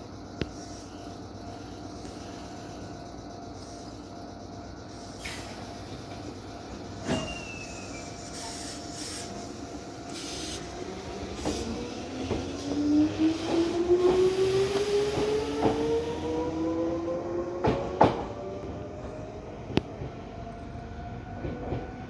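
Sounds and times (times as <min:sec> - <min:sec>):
train steady hum: 0:00.0 - 0:22.0
traction motor whine rising: 0:05.9 - 0:19.2.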